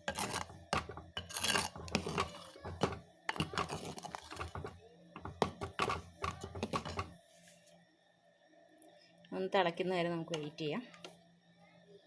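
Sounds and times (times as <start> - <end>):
spoon scraping pot: 0.0 - 7.2
spoon knocking against pot: 0.7 - 7.1.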